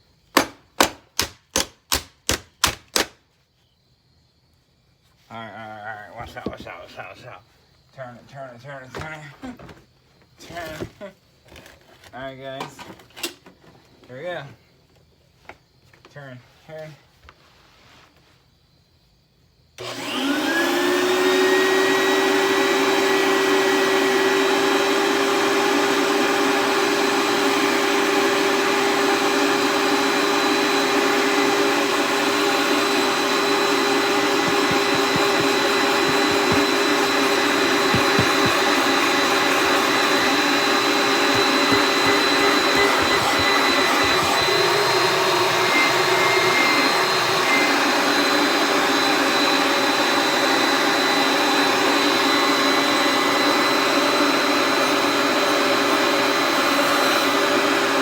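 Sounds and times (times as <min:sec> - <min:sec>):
vacuum cleaner motor whining: 0:19.8 - 0:58.0.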